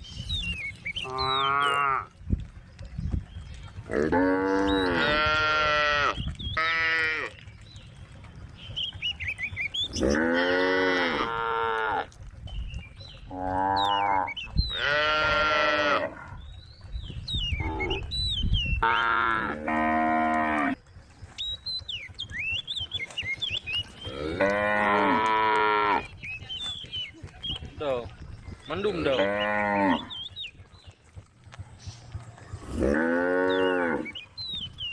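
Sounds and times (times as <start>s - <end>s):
cows mooing: 1.0s - 2.2s, 3.9s - 7.4s, 9.8s - 12.2s, 13.3s - 16.4s, 17.6s - 18.1s, 18.8s - 20.8s, 24.0s - 26.1s, 28.8s - 30.3s, 32.4s - 34.2s.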